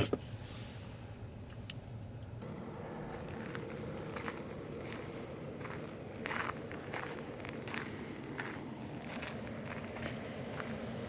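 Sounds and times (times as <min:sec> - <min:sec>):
low background noise: 0:00.0 - 0:11.0
footsteps crunching on rough ground: 0:02.5 - 0:11.0.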